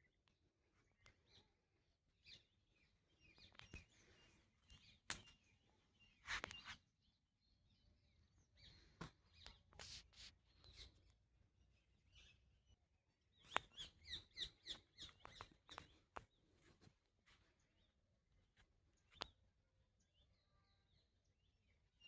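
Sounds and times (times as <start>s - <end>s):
faint bird chirps: 0.0s - 22.0s.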